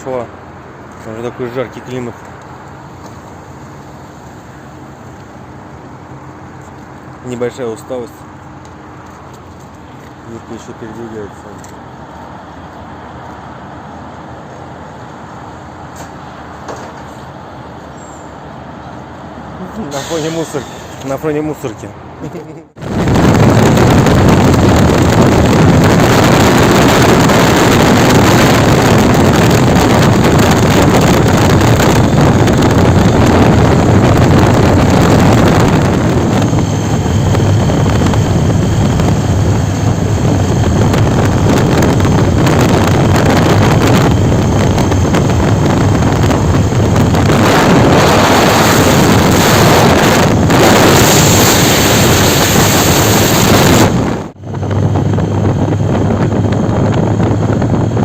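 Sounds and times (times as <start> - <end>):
road noise: 0.0 - 58.0
wind noise on microphone: 22.8 - 58.0.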